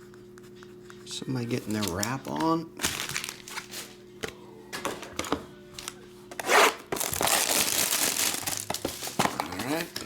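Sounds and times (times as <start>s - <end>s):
faint rap music: 3.8s - 6.9s.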